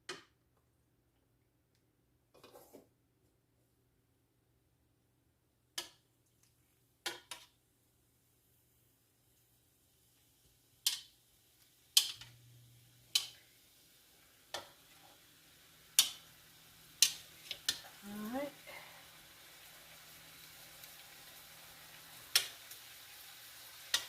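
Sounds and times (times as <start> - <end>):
hot oil sizzling: 7.0 - 24.0.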